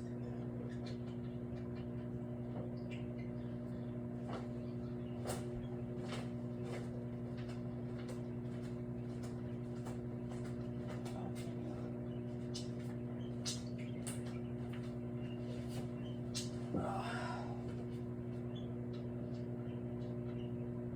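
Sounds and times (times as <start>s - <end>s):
microwave oven humming: 0.0s - 20.9s.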